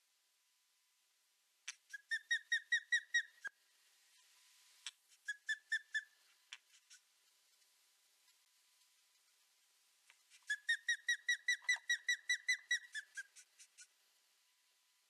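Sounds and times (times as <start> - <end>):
bird sharp whistled calls: 1.9 - 3.5, 10.5 - 13.4.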